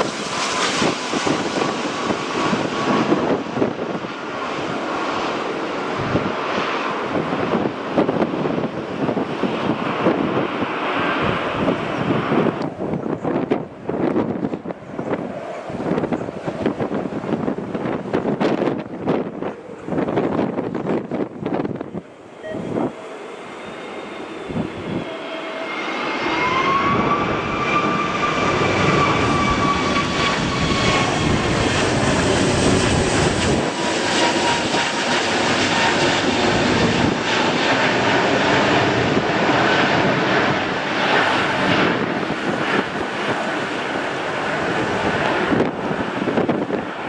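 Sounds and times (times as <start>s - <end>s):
jet engine rush: 0.0s - 47.0s
jet engine whine: 0.0s - 47.0s.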